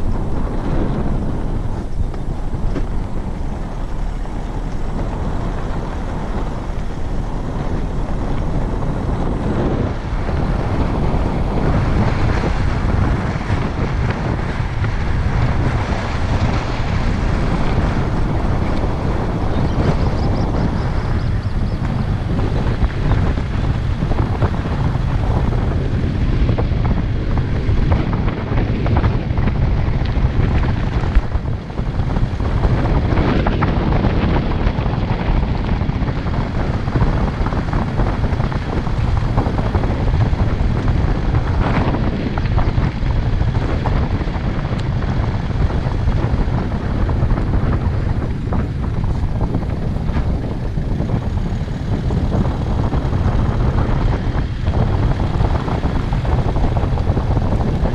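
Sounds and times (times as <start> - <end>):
vehicle engine and road noise: 0.0 - 57.9
wind buffeting microphone: 0.0 - 57.9.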